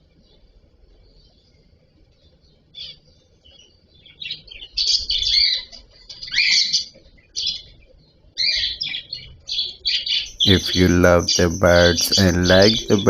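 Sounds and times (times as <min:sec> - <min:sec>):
cockatiel chirping harsh calls: 0:04.8 - 0:06.9.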